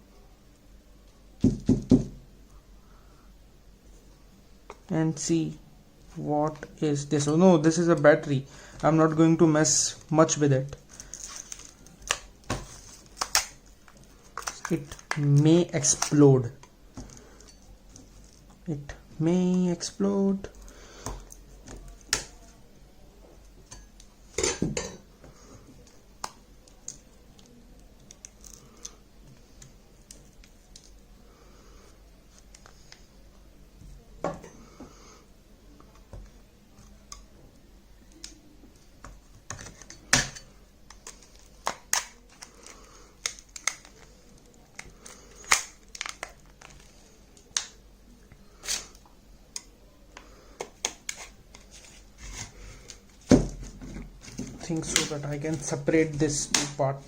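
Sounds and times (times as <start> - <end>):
plastic parts clicking and snapping: 11.1 - 16.2, 39.5 - 47.8.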